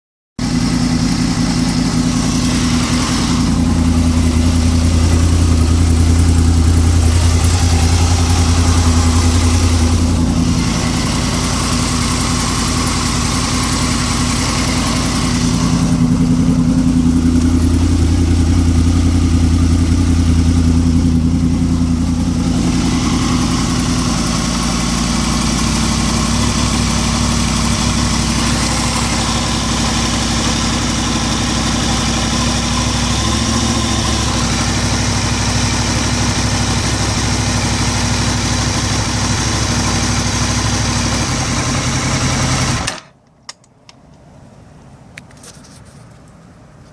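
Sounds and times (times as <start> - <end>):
engine idling: 0.4 - 43.1
low droning hum: 2.6 - 11.0.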